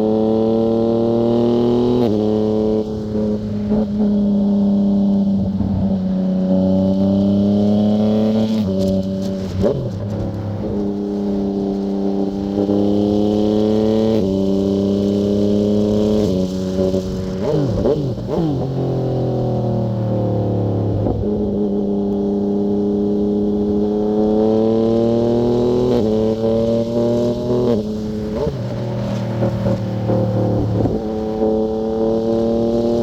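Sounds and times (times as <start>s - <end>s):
motorcycle engine revving: 0.0s - 33.0s.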